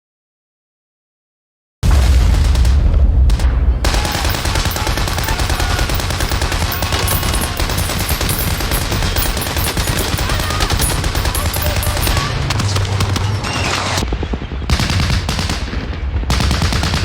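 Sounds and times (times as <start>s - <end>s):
automatic gunfire: 3.4s - 13.9s, 14.7s - 17.0s.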